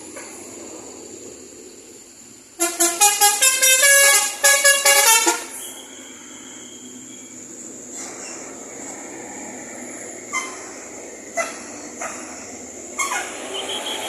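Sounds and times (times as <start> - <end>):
bus horn playing a tune: 2.6 - 5.7, 11.3 - 12.1, 13.0 - 14.0.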